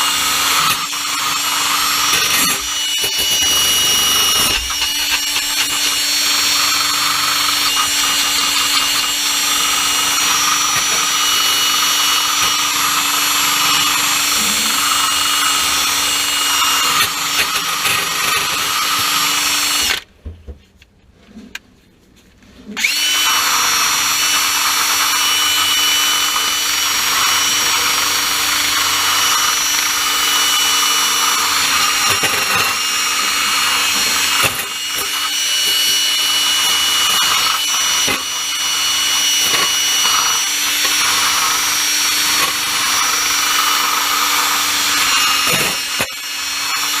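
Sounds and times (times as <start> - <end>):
power tool motor running: 0.0 - 20.1, 22.8 - 47.0.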